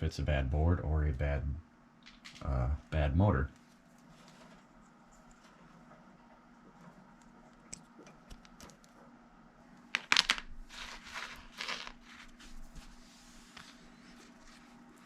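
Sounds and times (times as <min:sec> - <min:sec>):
faint steady hum: 0:00.0 - 0:15.0
crinkling scraping rustles: 0:03.6 - 0:07.1, 0:10.6 - 0:15.0.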